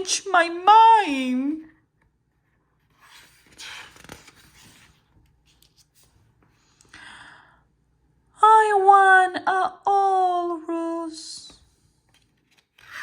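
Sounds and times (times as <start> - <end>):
paper pages rustling: 2.4 - 6.6, 12.1 - 13.0.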